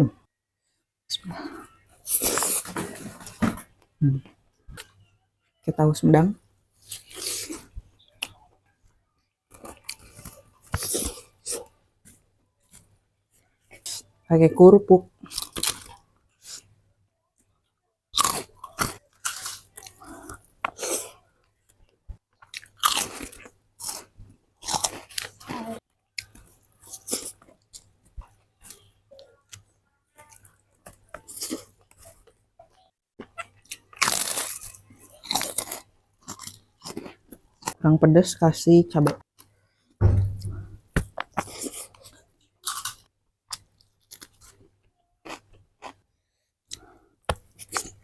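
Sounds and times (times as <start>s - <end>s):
crunching and chewing crackers: 1.6s - 3.4s, 6.8s - 14.0s, 15.1s - 37.8s, 39.2s - 40.0s, 41.0s - 48.0s.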